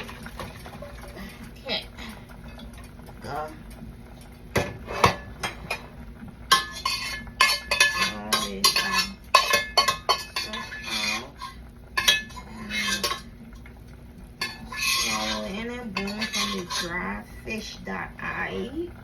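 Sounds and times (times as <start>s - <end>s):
utensil scraping a pot: 4.6s - 13.4s, 14.4s - 18.0s.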